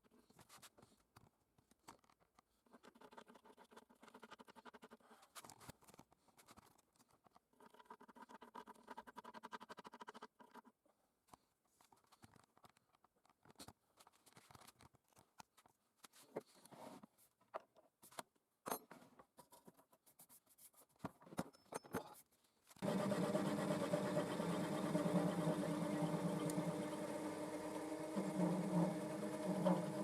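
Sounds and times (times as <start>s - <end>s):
belt grinder motor humming: 22.8s - 30.0s.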